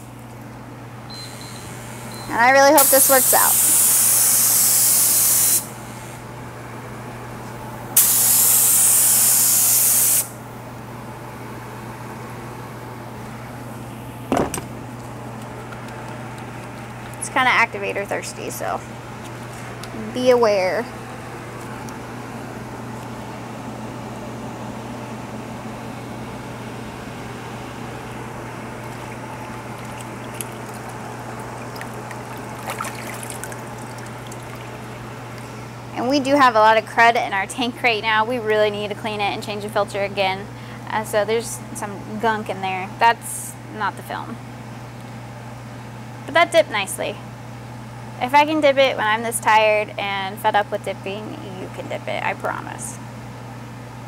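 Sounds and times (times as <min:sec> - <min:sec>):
spray gun hissing: 0:02.8 - 0:05.7, 0:08.0 - 0:10.3
steady low hum: 0:05.6 - 0:54.0
small water splashes: 0:28.8 - 0:34.9
water trickling: 0:28.8 - 0:34.9.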